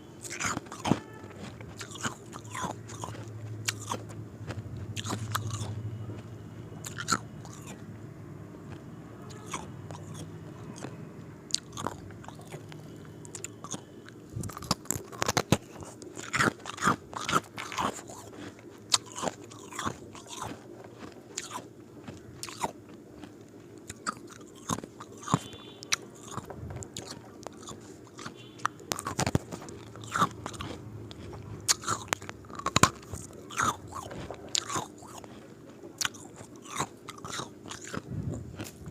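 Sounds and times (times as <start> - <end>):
low steady hum: 0.0 - 38.9
ice cubes crunched by chewing: 0.2 - 4.2, 11.5 - 35.4, 36.0 - 38.8.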